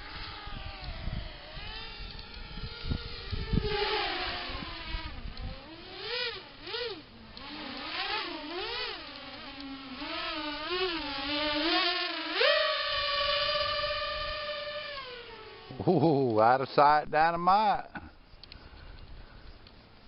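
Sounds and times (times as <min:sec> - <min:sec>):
wind rumbling on microphone: 0:00.0 - 0:06.4, 0:12.9 - 0:14.8
quadcopter motors whining: 0:00.0 - 0:16.8, 0:17.9 - 0:20.0.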